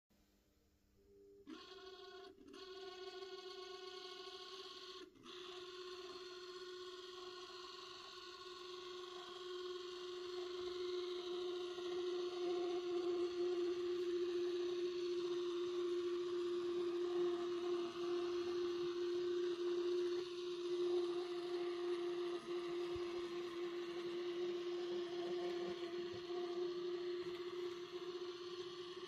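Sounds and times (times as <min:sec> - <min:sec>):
model locomotive drive whining: 0:01.5 - 0:29.0.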